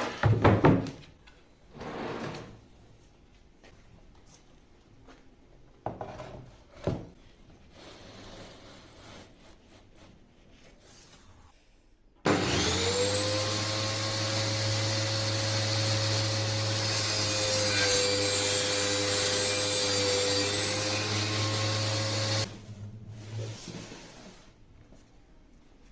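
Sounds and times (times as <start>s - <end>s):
rubbing and handling sounds: 7.1s - 11.9s
table saw motor whining: 12.3s - 22.5s.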